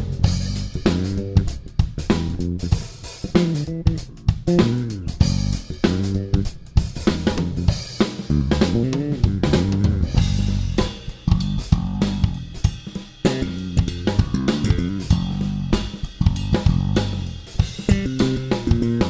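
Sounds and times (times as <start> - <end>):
bass guitar: 0.0 - 19.0
drum kit groove: 0.0 - 19.0
guitar: 13.2 - 17.0, 17.7 - 19.0.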